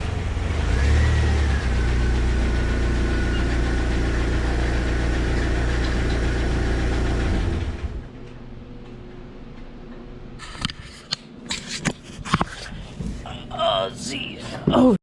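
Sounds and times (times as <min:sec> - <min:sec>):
car engine idling: 0:00.0 - 0:08.1.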